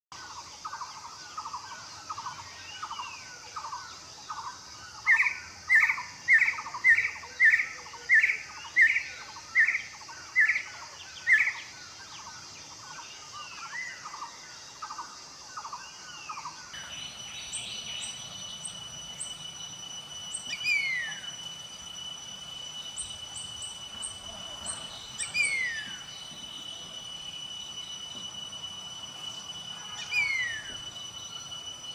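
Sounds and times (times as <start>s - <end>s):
descending whistled calls: 0.2s - 31.9s
steady high whine: 0.2s - 31.9s
birds calling rapidly: 15.6s - 27.6s, 29.5s - 30.9s
sharp bird notes: 16.8s - 31.7s.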